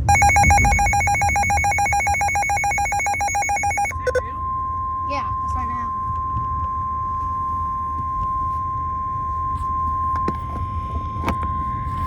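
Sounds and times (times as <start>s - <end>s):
steady warning alarm tone: 0.0s - 4.2s.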